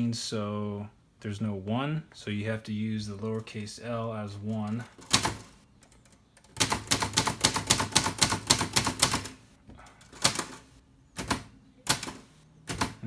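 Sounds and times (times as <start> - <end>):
manual typewriter keystrokes: 4.6 - 9.4, 10.0 - 13.0.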